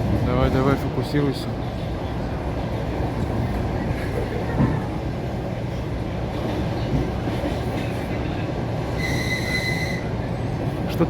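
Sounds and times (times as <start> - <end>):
train wheels rumbling on rails: 0.0 - 11.0.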